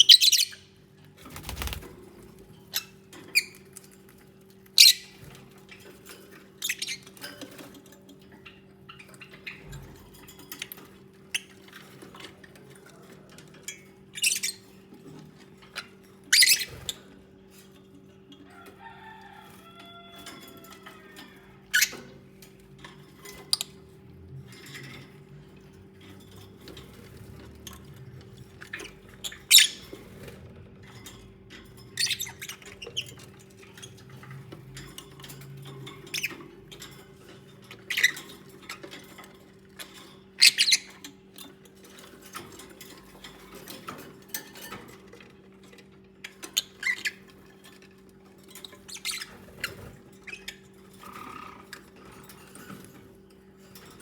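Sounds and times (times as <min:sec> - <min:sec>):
lovebirds chirping: 0:00.0 - 0:00.8, 0:04.8 - 0:05.2, 0:28.6 - 0:30.0, 0:32.0 - 0:33.2.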